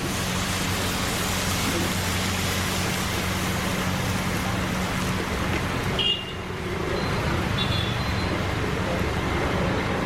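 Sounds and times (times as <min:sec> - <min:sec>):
gas burner rushing: 0:00.0 - 0:05.8.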